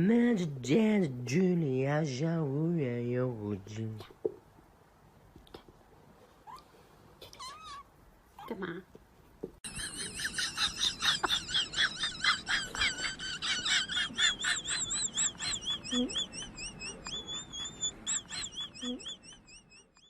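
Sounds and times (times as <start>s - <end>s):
baby birds peeping: 9.7s - 20.0s.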